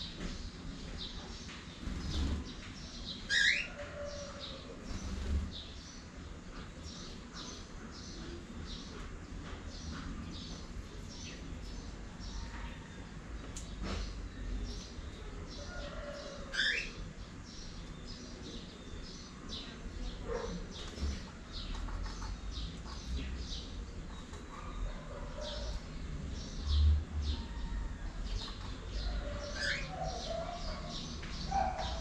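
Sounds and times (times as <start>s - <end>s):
cockatiels chirping: 3.3s - 3.7s, 16.5s - 16.9s, 29.4s - 30.2s.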